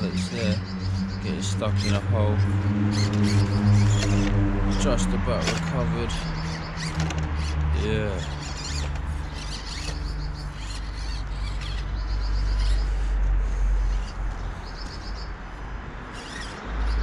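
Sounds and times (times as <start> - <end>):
small bird chirping trills: 0.0 - 5.1, 6.0 - 13.2.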